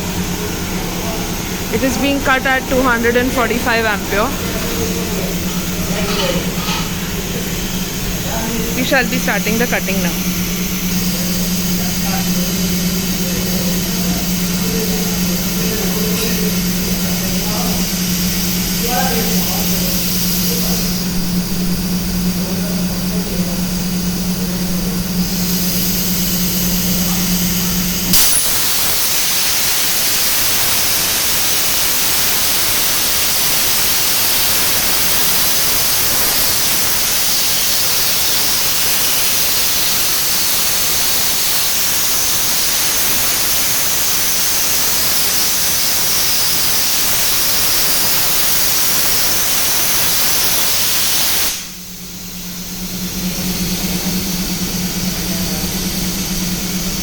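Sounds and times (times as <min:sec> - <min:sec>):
machine hum with hiss: 0:00.0 - 0:57.0
plasma arc hissing through metal: 0:25.0 - 0:57.0.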